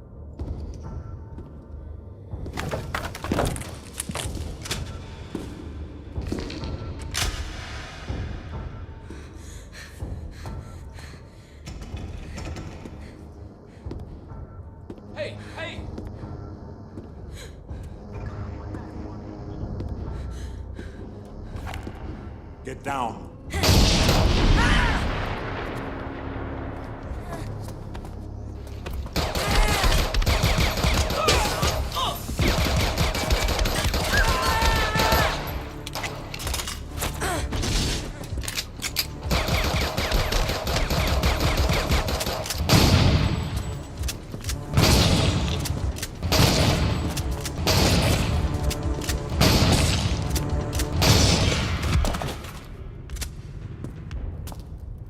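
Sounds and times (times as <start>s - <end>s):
gun reloading: 35.8s - 37.0s.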